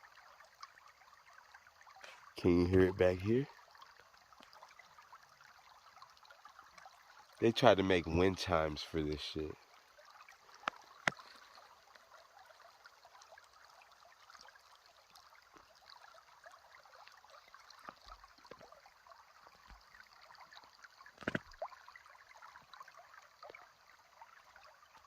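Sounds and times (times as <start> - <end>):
creek trickling over rocks: 0.0 - 25.0.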